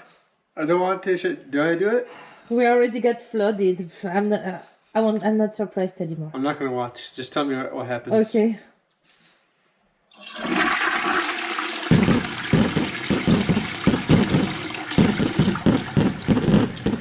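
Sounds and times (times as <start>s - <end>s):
toilet flushing: 10.1s - 16.3s
water gurgling down drain: 10.2s - 17.0s.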